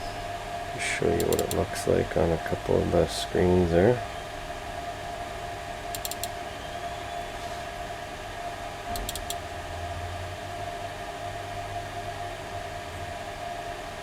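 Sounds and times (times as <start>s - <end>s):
cooling fans whirring: 0.0s - 14.0s
small sharp clicks: 1.2s - 1.6s, 5.9s - 6.4s, 8.9s - 9.4s.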